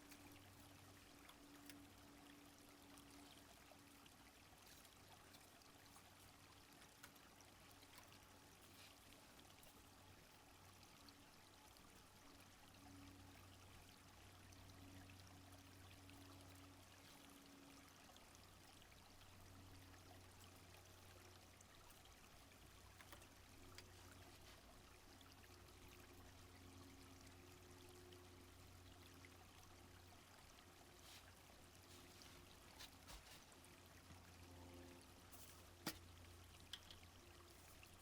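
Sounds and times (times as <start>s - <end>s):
small stream flowing: 0.0s - 38.0s
low hum: 22.2s - 38.0s.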